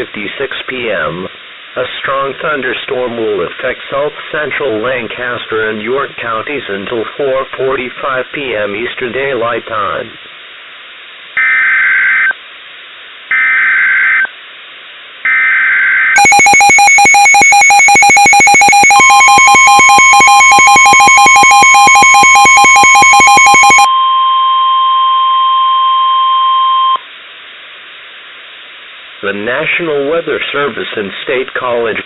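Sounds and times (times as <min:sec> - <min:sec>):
warbling data bursts: 0:15.3 - 0:23.9
rapid electronic beeping alarm: 0:15.3 - 0:24.6
steady warning alarm tone: 0:15.3 - 0:27.0.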